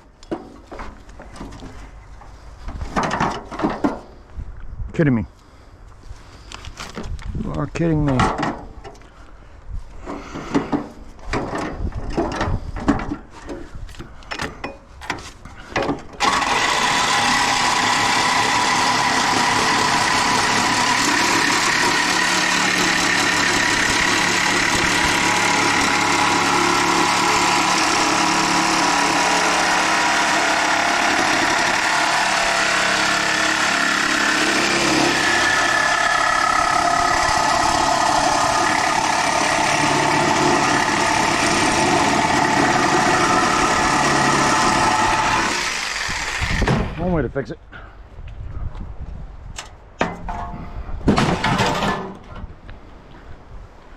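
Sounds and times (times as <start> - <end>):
knocks and clatter: 2.8 - 4.1, 49.6 - 52.5
small engine running: 16.2 - 46.6.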